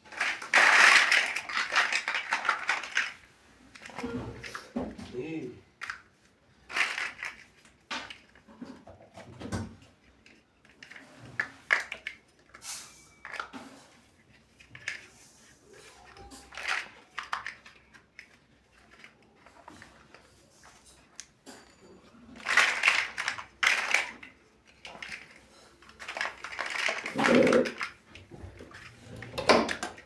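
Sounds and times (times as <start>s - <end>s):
plastic bricks clicking together: 0.1s - 4.6s, 5.8s - 6.1s, 6.7s - 8.5s, 11.6s - 12.6s, 16.1s - 19.5s, 22.3s - 30.0s.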